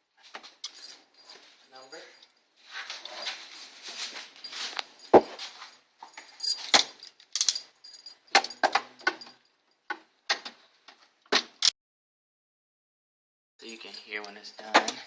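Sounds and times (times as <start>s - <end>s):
metallic clicks and clinks: 0.4s - 3.7s, 4.4s - 9.9s, 13.6s - 15.0s.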